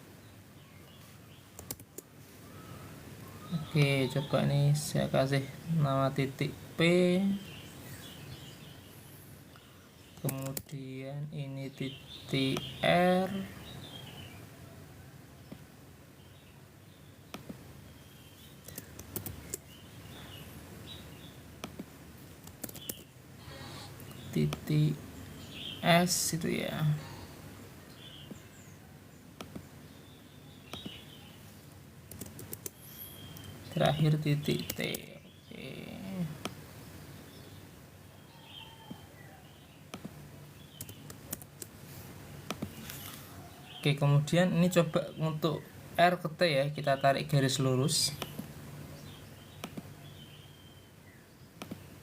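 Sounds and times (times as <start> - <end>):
faint room noise: 0.0 - 52.0
mouse and keyboard clicks: 1.6 - 2.1, 10.2 - 10.7, 18.6 - 19.6, 21.6 - 23.1, 29.4 - 29.6, 32.1 - 33.6, 42.4 - 43.2, 49.6 - 49.9, 51.6 - 51.9
bird chirps: 2.4 - 5.8, 22.7 - 29.0, 29.8 - 31.5, 32.6 - 39.9, 46.6 - 51.5.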